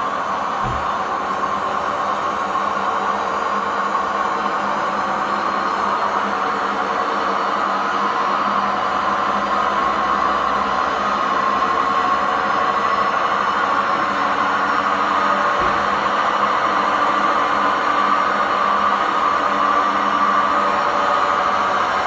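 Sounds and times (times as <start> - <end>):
washing machine spinning: 0.2 - 5.2, 10.1 - 22.0.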